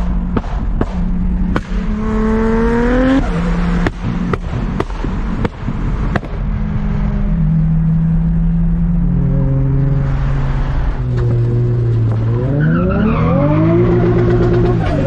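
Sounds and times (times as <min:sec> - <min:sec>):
loud car engine revving: 0:00.0 - 0:15.0
engine crackles: 0:10.0 - 0:15.0.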